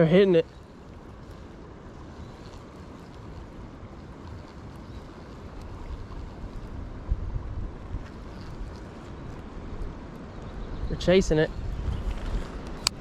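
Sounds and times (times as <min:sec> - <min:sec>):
wind on microphone: 0:00.0 - 0:13.0.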